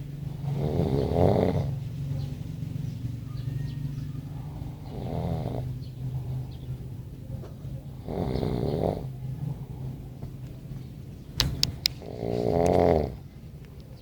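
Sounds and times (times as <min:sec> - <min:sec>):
steady low hum: 0:00.0 - 0:14.0
snoring: 0:00.3 - 0:01.9, 0:04.3 - 0:06.6, 0:07.9 - 0:10.0, 0:12.0 - 0:13.3.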